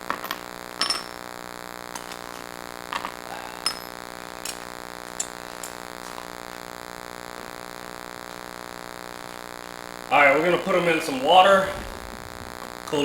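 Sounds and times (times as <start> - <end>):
steady electrical hum: 0.0 - 13.0
metallic clinks of coins and tools: 3.6 - 5.8.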